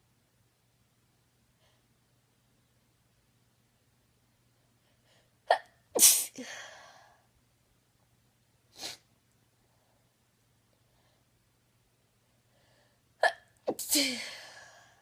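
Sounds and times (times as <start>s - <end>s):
woman sneezing: 5.5s - 6.5s, 13.7s - 14.4s.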